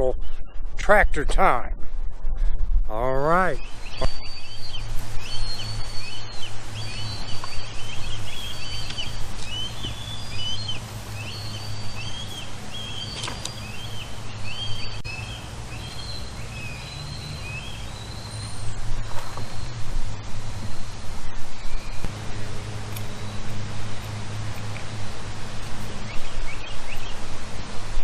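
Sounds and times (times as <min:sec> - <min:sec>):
steady low hum: 0:00.0 - 0:28.0
high chirping animal calls: 0:03.5 - 0:19.8.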